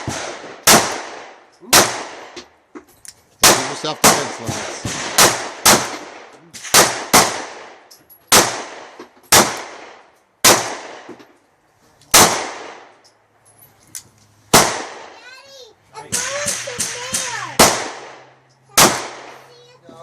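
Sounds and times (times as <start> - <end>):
handgun shots echoing: 3.4 - 11.2, 16.1 - 18.2, 18.8 - 19.4.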